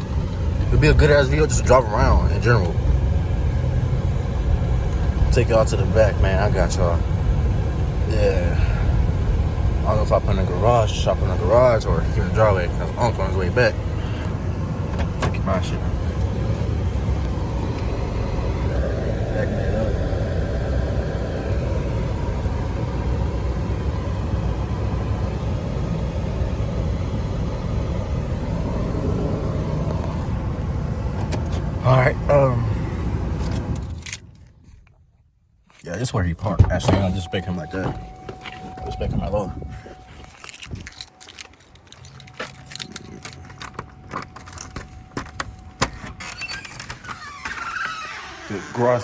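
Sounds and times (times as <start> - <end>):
car engine and road rumble: 0.0 - 49.0
keys jangling: 39.6 - 47.2.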